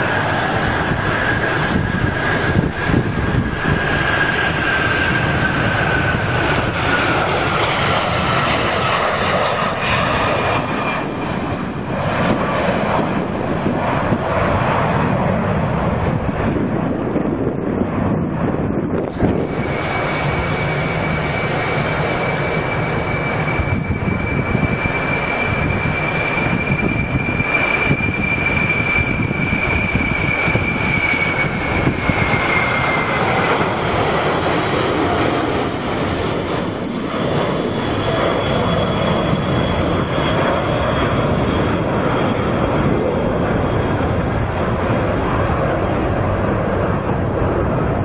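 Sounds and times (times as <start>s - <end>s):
airliner engines running: 0.0s - 48.0s
high engine whine: 0.0s - 48.0s
fainter higher whine: 18.6s - 48.0s.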